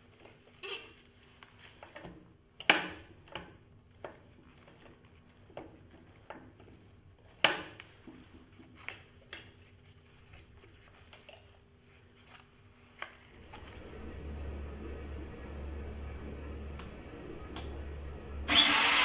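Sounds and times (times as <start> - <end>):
magnetic drill motor running: 13.7 - 19.0.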